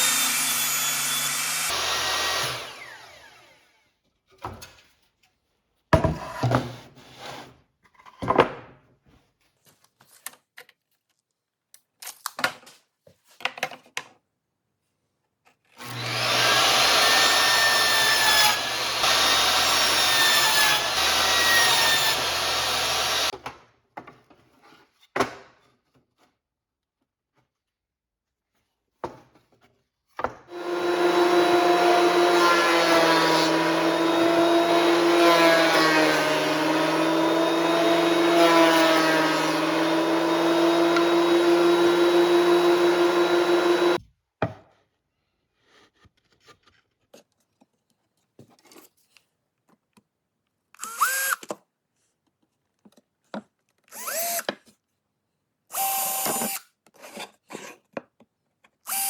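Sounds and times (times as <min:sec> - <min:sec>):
power drill running: 0:00.0 - 0:03.8, 0:15.8 - 0:23.3, 0:30.5 - 0:44.0, 0:50.8 - 0:51.4, 0:53.9 - 0:54.5, 0:55.7 - 0:56.6.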